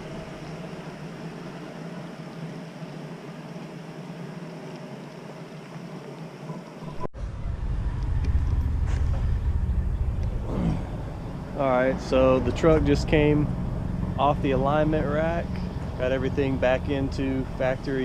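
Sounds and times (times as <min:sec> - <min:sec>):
steady mechanical hum: 0:00.0 - 0:18.0
pickup engine idling: 0:07.6 - 0:18.0.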